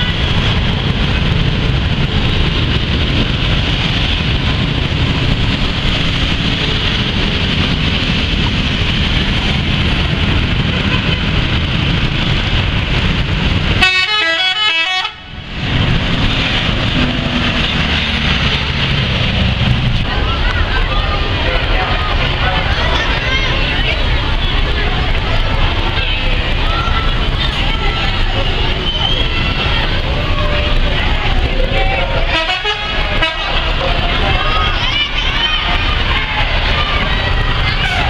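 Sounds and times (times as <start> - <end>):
bus and road noise: 0.0 - 38.0
multi-tone bus horn melody: 13.7 - 15.4, 32.0 - 33.8, 37.7 - 38.0.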